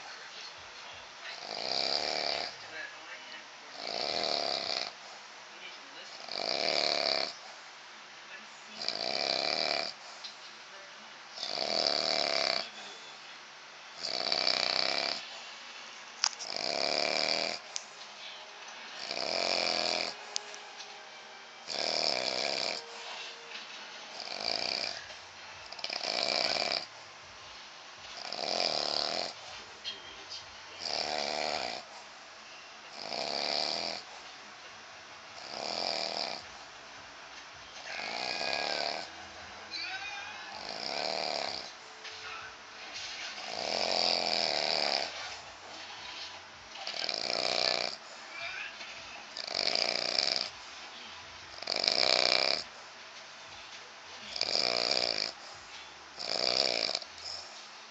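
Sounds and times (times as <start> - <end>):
man snoring: 1.3 - 2.6, 3.7 - 5.0, 6.1 - 7.4, 8.8 - 10.0, 11.4 - 12.8, 14.0 - 15.3, 16.4 - 17.7, 19.0 - 20.3, 21.6 - 23.3, 24.1 - 27.0, 28.2 - 29.4, 30.8 - 31.9, 32.9 - 34.1, 35.4 - 36.5, 37.9 - 39.2, 40.5 - 41.8, 43.4 - 45.3, 46.9 - 48.0, 49.3 - 50.6, 51.6 - 52.8, 54.3 - 55.5, 56.2 - 57.4
quiet breathing: 6.1 - 10.8, 21.6 - 29.9.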